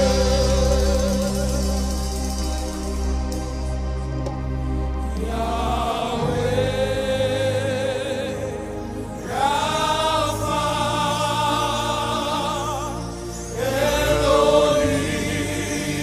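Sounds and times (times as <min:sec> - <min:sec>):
low steady accompaniment: 0:00.0 - 0:16.0
wordless sung notes with vibrato: 0:00.0 - 0:16.0.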